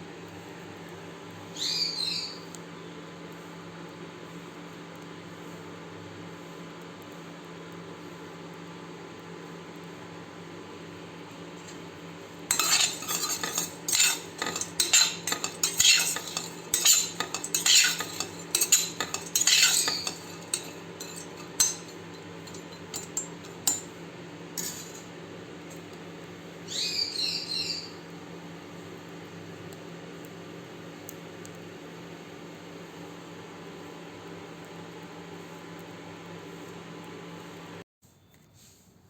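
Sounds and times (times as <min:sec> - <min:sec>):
steady low hum: 0:11.4 - 0:26.6
clinks: 0:12.5 - 0:23.9, 0:24.6 - 0:25.1
spoon scraping in a pan: 0:12.5 - 0:24.0, 0:24.6 - 0:25.9.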